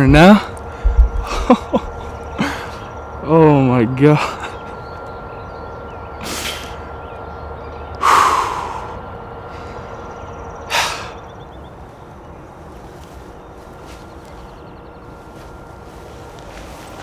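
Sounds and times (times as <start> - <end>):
man breathing hard: 0.5 - 1.5, 2.4 - 2.9, 8.0 - 10.0, 10.7 - 11.3.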